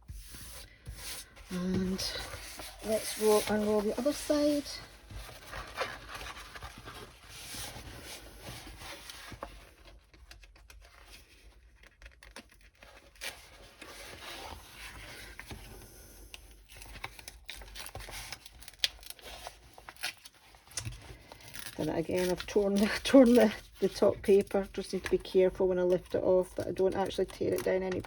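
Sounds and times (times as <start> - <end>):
canvas rustling and crinkling: 0.0 - 9.8.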